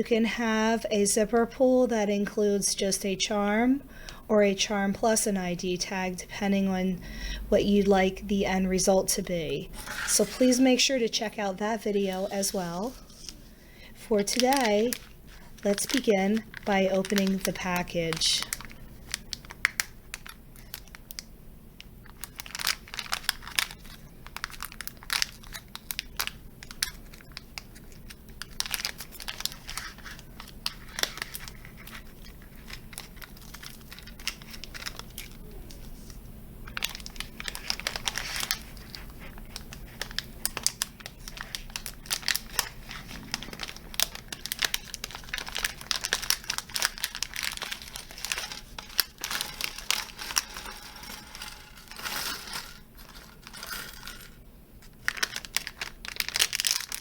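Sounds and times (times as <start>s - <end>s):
package wrapping crinkling: 14.1s - 21.3s, 22.0s - 57.0s.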